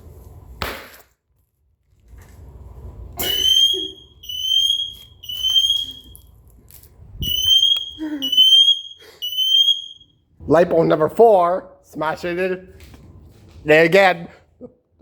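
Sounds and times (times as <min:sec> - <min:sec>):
smoke alarm beeping: 0:03.2 - 0:06.3, 0:07.2 - 0:10.2.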